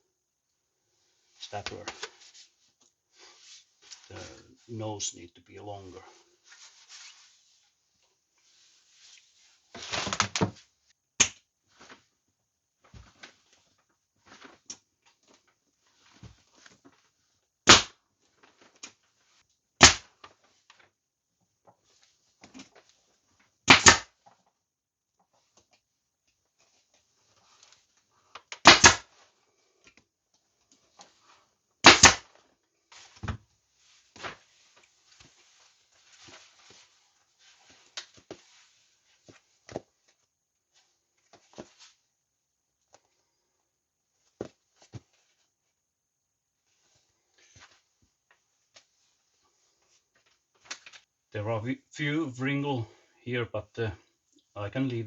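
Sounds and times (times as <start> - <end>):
fabric rustling: 0.8 - 4.8, 5.8 - 11.0, 11.6 - 19.5, 29.1 - 51.2.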